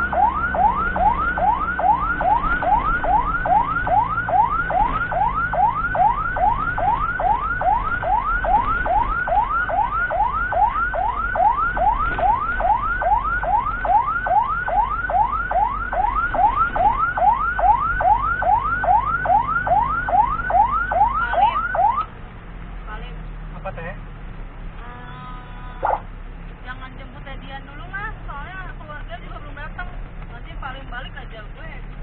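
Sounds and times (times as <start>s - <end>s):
ambulance siren yelping: 0.0s - 22.1s, 25.8s - 26.1s
low vehicle rumble: 0.0s - 32.0s.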